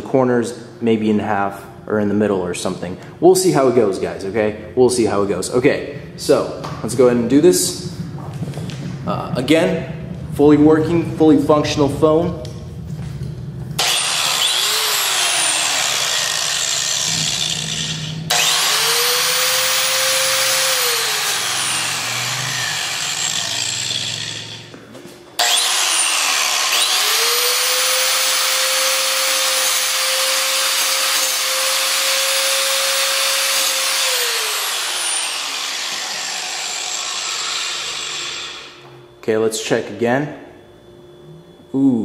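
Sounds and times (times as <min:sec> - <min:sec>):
angle grinder grinding metal: 0:13.8 - 0:24.7, 0:25.4 - 0:38.8.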